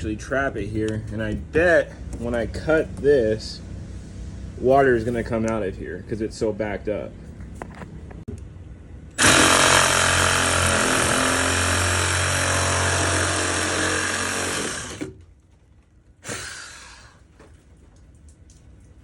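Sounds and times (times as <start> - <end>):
power saw cutting pipe: 9.2 - 15.2, 16.2 - 17.2.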